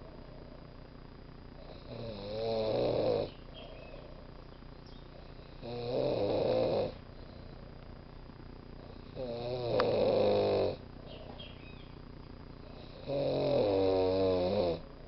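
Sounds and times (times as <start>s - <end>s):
quiet breathing: 0.0s - 2.4s, 3.3s - 11.6s, 12.4s - 13.4s
person snoring: 1.6s - 3.4s, 5.2s - 7.0s, 8.8s - 10.8s, 12.7s - 14.8s.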